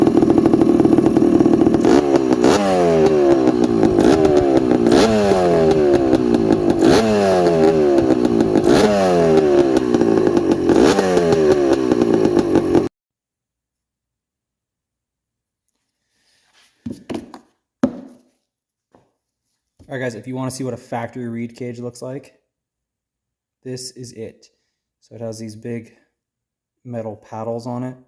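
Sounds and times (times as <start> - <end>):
two-stroke engine revving: 0.0 - 12.9.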